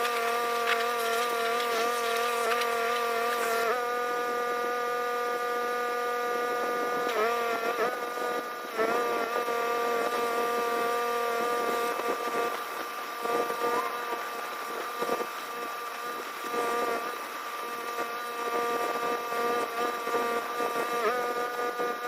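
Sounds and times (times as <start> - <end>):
water spray hiss: 0.0 - 3.7
pressure washer whining hum: 0.0 - 22.0.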